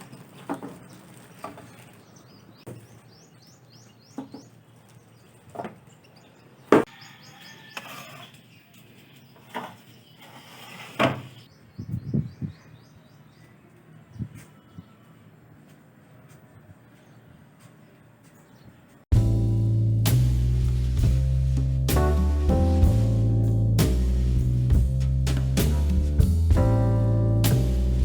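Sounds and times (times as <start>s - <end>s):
bird chirping: 0.1s - 10.5s, 11.3s - 20.0s.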